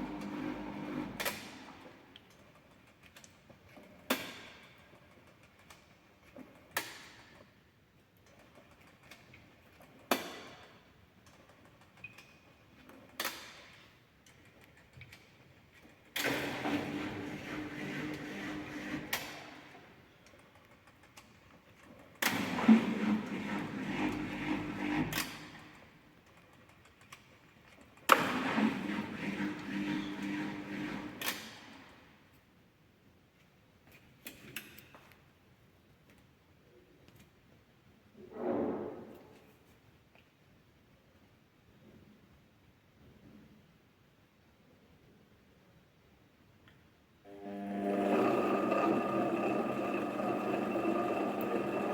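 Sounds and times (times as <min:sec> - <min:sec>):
washing machine motor humming: 0:00.0 - 0:01.2, 0:47.3 - 0:51.9
washing machine clicking: 0:47.8 - 0:51.9.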